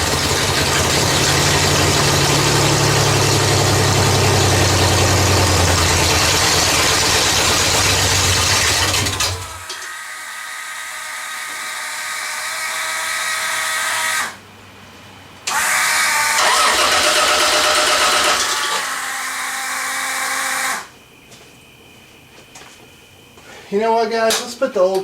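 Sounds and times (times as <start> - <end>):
engine cranking on starter: 0.0 - 9.7, 15.5 - 19.1.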